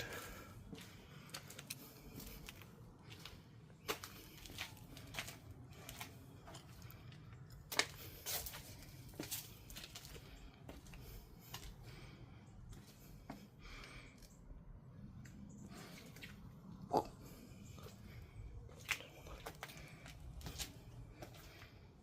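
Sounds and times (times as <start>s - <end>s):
footsteps crunching over debris: 0.0s - 12.0s.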